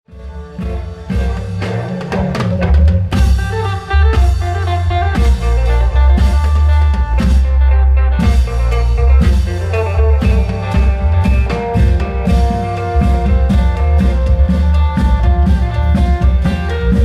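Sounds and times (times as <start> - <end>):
amplified drum music: 0.1 - 17.0.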